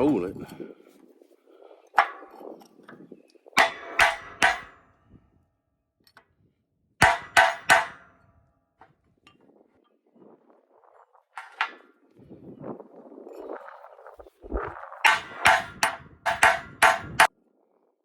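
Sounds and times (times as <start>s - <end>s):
hammer clanging on steel: 3.6s - 4.8s, 7.0s - 8.1s, 15.1s - 17.3s.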